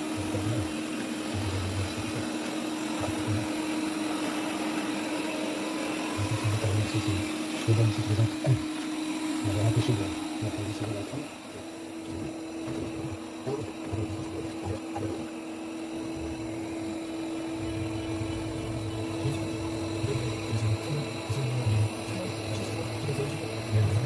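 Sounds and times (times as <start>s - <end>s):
robot vacuum motor hum: 0.0s - 24.0s.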